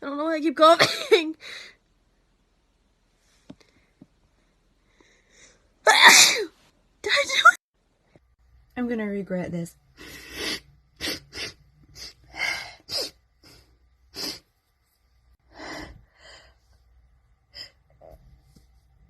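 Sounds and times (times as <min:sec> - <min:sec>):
woman sneeze-like bursts: 0:05.9 - 0:06.5.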